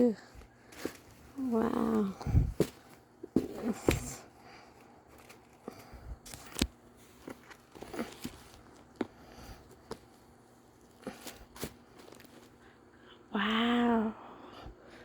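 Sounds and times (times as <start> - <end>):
paper rustling: 5.1 - 9.0.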